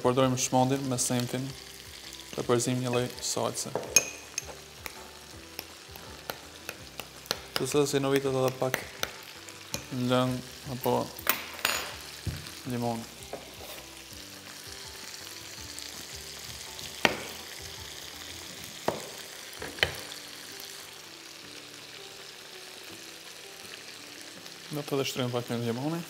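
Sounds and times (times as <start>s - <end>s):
chicken frying in oil: 0.0s - 3.7s, 21.4s - 26.0s.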